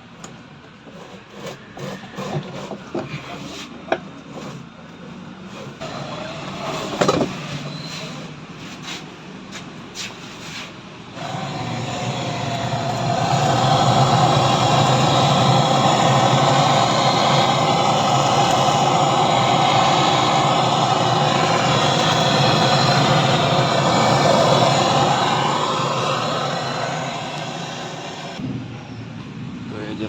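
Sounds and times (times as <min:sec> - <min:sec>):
gas torch roaring hiss: 0:05.8 - 0:08.3, 0:11.2 - 0:28.4.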